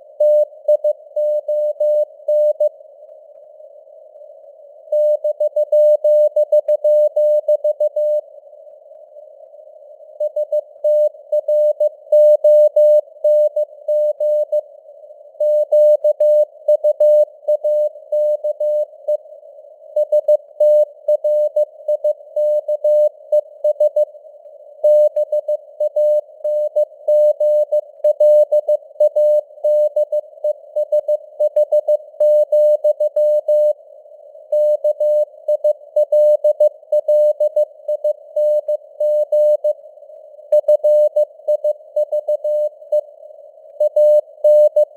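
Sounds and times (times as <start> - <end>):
receiver hiss: 0.0 - 44.9
morse code tone: 43.8 - 44.9.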